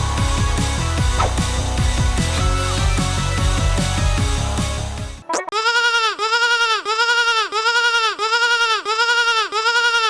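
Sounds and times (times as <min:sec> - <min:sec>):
music: 0:00.0 - 0:05.5
sheep bleating: 0:05.5 - 0:10.0.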